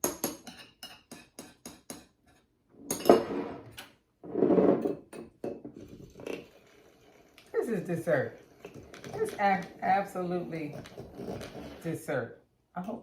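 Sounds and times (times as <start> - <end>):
spoon clinking in a cup: 0.0 - 2.1
scraping or rustling noises: 2.8 - 5.0, 5.8 - 12.1.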